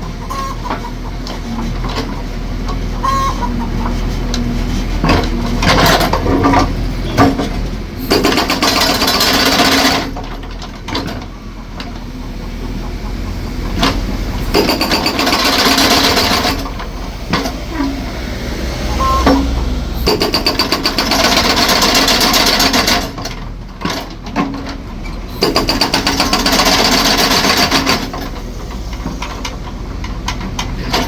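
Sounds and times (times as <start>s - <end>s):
concrete breaker hammering: 5.1s - 10.4s, 14.3s - 17.4s, 19.2s - 23.4s, 25.3s - 28.3s.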